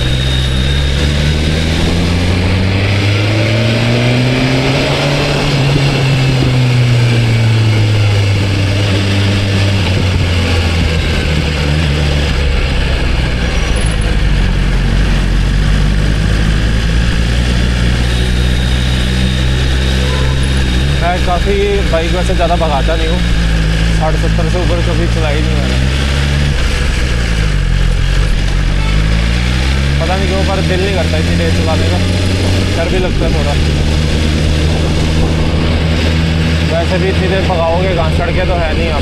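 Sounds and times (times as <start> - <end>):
motorcycle engine: 0.0 - 39.0.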